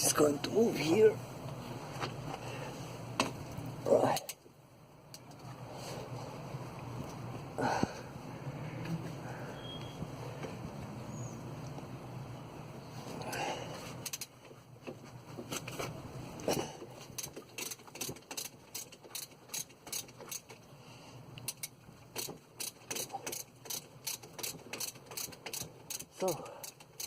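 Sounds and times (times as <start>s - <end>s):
ratchet wrench clicking: 14.0s - 14.3s, 17.2s - 20.6s, 21.4s - 27.0s.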